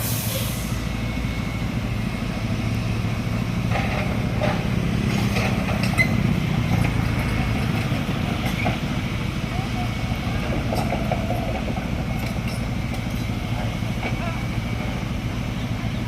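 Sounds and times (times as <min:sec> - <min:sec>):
diesel truck engine running: 0:00.0 - 0:16.0.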